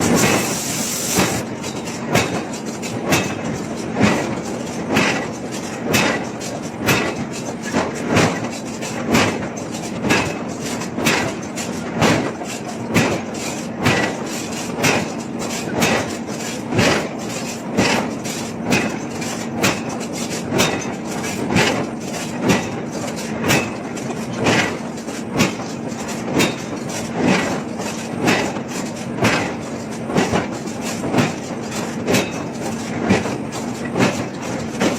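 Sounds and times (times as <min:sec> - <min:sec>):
forging hammer striking steel: 0:01.2 - 0:08.5, 0:11.0 - 0:18.1, 0:18.7 - 0:20.0, 0:20.6 - 0:24.8, 0:26.4 - 0:27.5.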